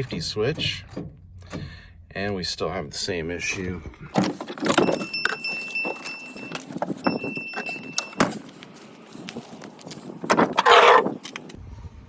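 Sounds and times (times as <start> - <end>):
keys jangling in ignition: 4.4 - 8.8
high warning chime: 4.7 - 8.5.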